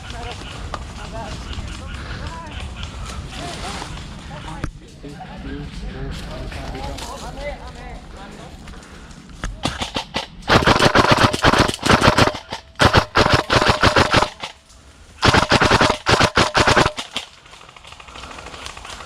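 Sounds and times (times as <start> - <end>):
airsoft gun firing: 9.6 - 14.6, 15.2 - 17.4.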